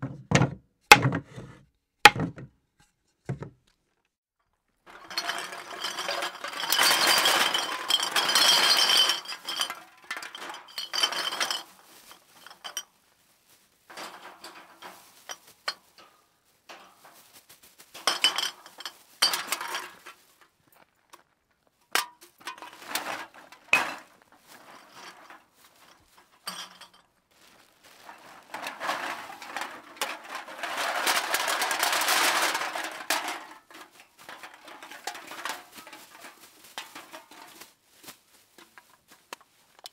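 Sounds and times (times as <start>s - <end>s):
glass bottles clinking: 4.9s - 11.7s, 12.4s - 12.8s, 18.0s - 20.0s, 22.0s - 27.0s.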